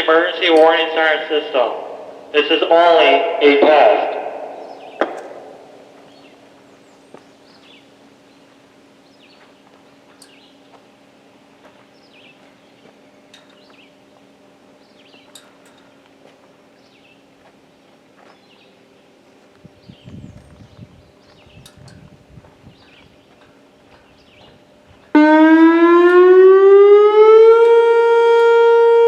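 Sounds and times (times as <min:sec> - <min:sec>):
echoing loudspeaker announcement: 0:00.0 - 0:05.8, 0:25.2 - 0:29.0
birds chirping: 0:00.0 - 0:29.0
faint steady hum: 0:00.0 - 0:29.0.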